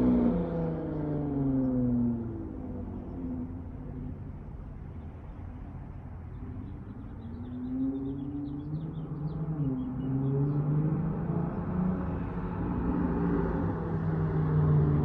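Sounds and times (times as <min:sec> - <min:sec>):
car exhaust rumbling and revving: 0:00.0 - 0:05.4.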